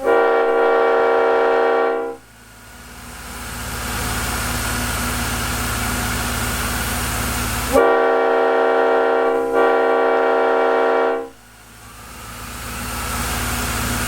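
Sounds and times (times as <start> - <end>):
locomotive air horn chord: 0.0 - 2.3, 7.6 - 12.3.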